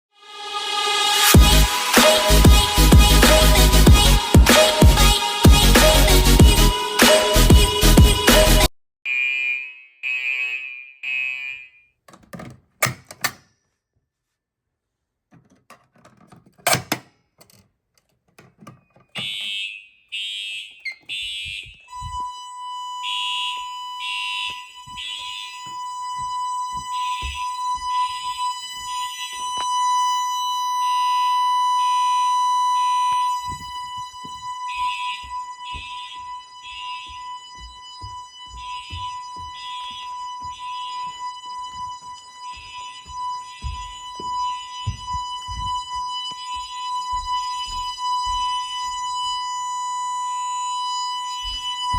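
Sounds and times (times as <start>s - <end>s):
fire alarm horn blasts: 0.2s - 11.9s, 19.1s - 51.9s
steady high tone: 20.6s - 49.0s.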